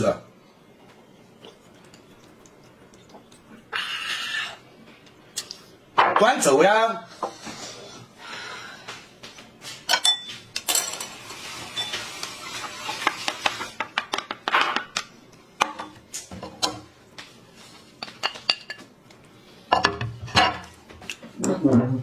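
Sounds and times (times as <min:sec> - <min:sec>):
cutlery clinking against dishes: 0:09.9 - 0:12.1.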